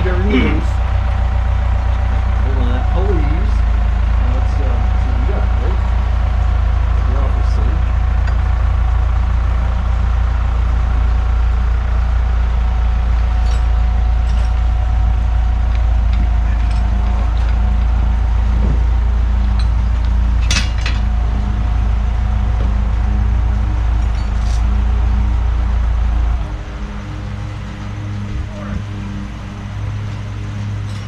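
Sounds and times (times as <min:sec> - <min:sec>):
engine droning steadily: 0:00.0 - 0:31.0
metallic clinks: 0:13.2 - 0:14.8, 0:24.0 - 0:24.8.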